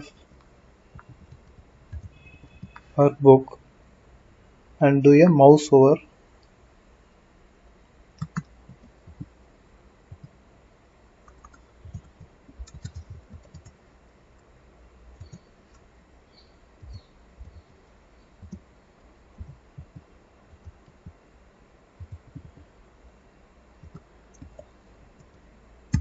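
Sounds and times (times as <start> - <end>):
computer mouse clicks: 8.2 - 9.3, 11.2 - 13.8, 15.2 - 15.8, 23.8 - 26.0.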